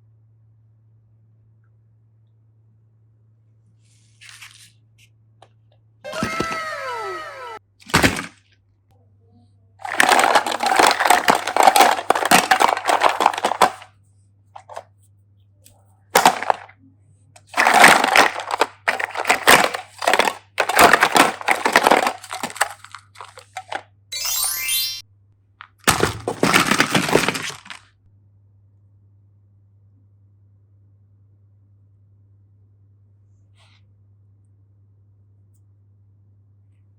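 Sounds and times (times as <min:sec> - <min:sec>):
plastic wrapper crinkling: 0:09.8 - 0:13.9, 0:17.5 - 0:23.8, 0:25.9 - 0:27.8.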